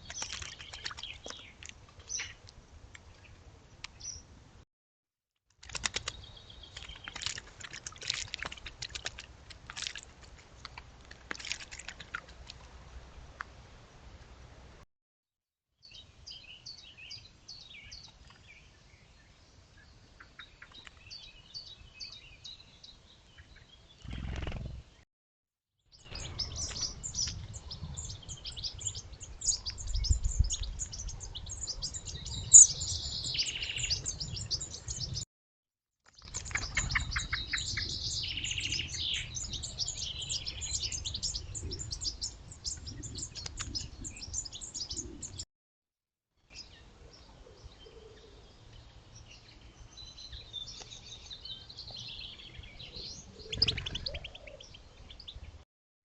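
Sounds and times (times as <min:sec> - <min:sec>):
small birds chirping: 0:00.0 - 0:02.4, 0:03.0 - 0:04.3, 0:05.8 - 0:07.4, 0:15.8 - 0:25.0, 0:25.9 - 0:35.2, 0:36.1 - 0:45.4, 0:46.5 - 0:55.6
low wind rumble on microphone: 0:26.1 - 0:35.2, 0:36.6 - 0:45.4.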